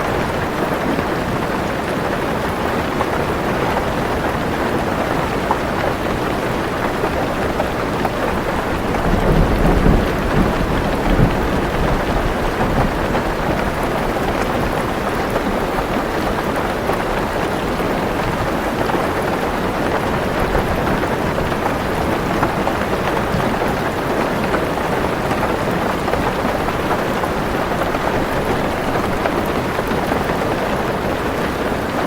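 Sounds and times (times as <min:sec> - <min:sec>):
heavy rain on a car roof: 0:00.0 - 0:32.0
low rumble of thunder: 0:08.5 - 0:14.6.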